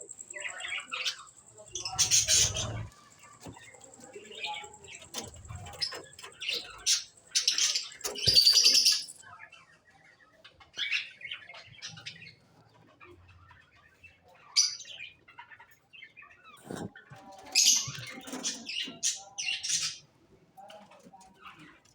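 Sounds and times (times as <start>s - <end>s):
caged birds chirping: 0.0s - 21.9s.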